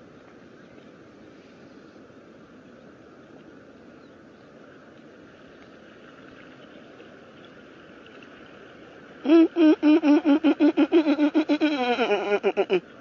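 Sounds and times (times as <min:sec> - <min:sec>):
person laughing rhythmically: 0:09.3 - 0:12.8.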